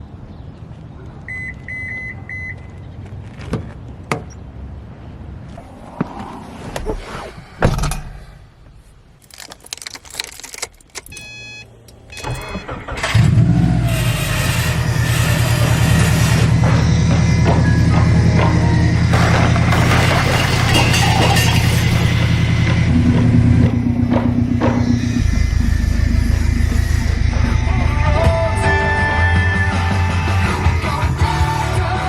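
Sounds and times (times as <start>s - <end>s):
short electronic beeps: 1.3s - 2.8s, 11.0s - 12.9s
low steady hum: 22.6s - 30.8s.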